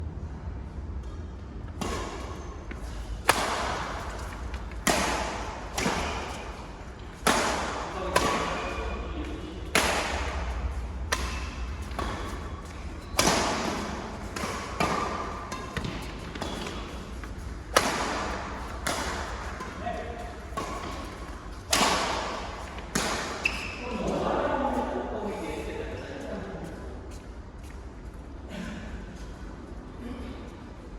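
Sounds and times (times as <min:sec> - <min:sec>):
badminton racket hits echoing: 0:01.7 - 0:23.8.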